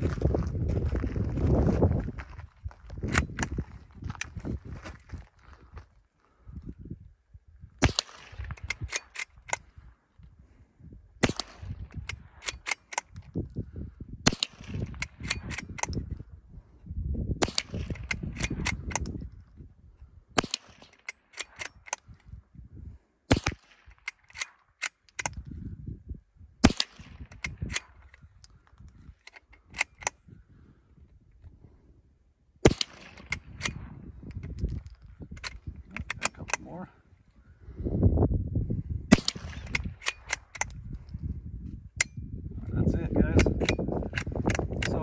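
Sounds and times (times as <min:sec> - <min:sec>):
rifle shots: 0:07.8 - 0:09.6, 0:11.2 - 0:13.1, 0:14.3 - 0:16.0, 0:17.4 - 0:19.1, 0:20.4 - 0:21.9, 0:23.3 - 0:25.4, 0:26.6 - 0:28.0, 0:32.6 - 0:34.0, 0:39.1 - 0:40.8.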